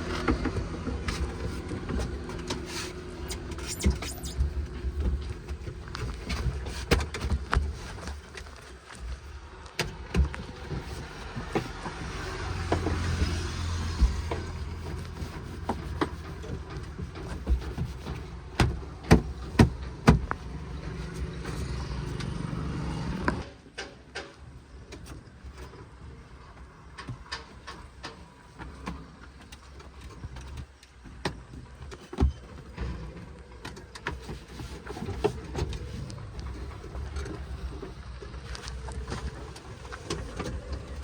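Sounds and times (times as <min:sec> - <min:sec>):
heavy machinery engine hum: 0:00.0 - 0:07.7, 0:09.2 - 0:23.5
sharp knocks and clanks: 0:15.2 - 0:22.3.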